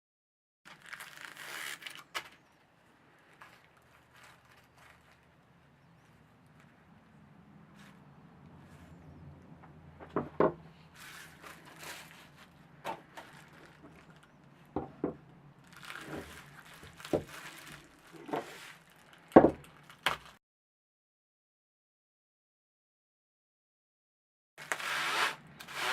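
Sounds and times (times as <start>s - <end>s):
rustling: 0.7s - 9.4s, 10.7s - 14.7s, 15.6s - 20.4s
hard objects knocking and clicking: 14.8s - 15.2s.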